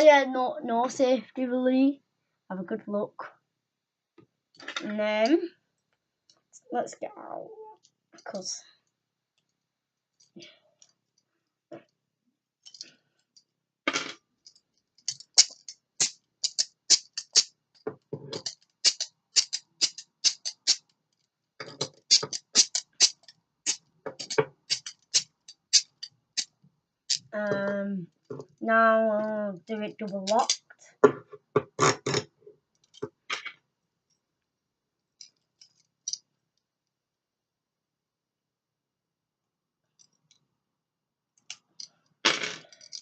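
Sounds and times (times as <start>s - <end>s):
handcuffs clicking: 14.4s - 17.5s, 18.4s - 20.9s, 21.7s - 26.5s, 30.3s - 30.6s, 35.2s - 36.2s, 42.7s - 43.0s.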